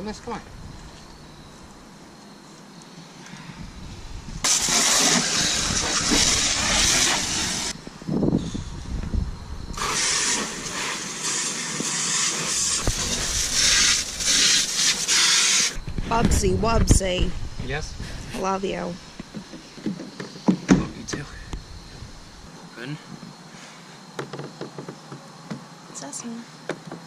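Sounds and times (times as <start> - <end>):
hose water spraying on plastic: 4.4 - 7.8, 9.7 - 15.8.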